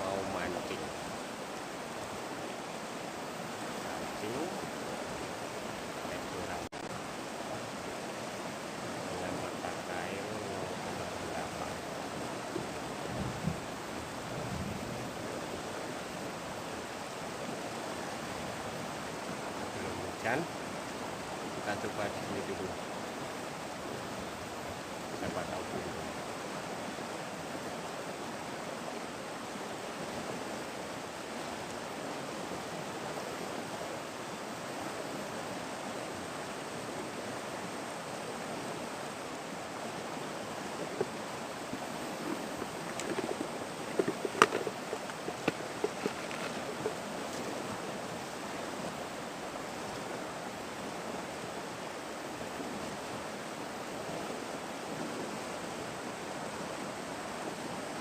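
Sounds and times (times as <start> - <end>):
flowing river water: 0.0 - 58.0
clicks and knocks: 42.2 - 47.0.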